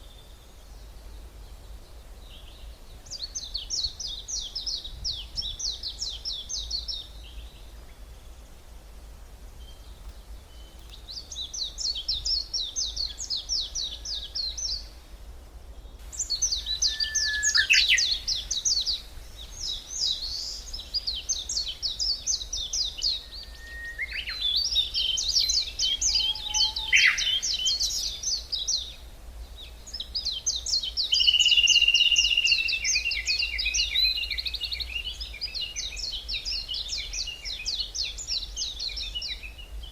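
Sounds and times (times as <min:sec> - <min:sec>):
songbirds trilling: 0:09.4 - 0:39.9
held bird whistle: 0:16.4 - 0:18.2, 0:25.9 - 0:27.7.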